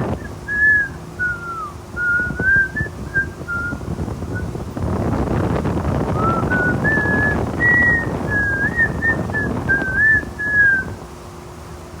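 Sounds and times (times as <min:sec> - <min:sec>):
low background rumble: 0:00.0 - 0:11.1
person whistling a tune: 0:00.2 - 0:03.9, 0:06.2 - 0:11.0.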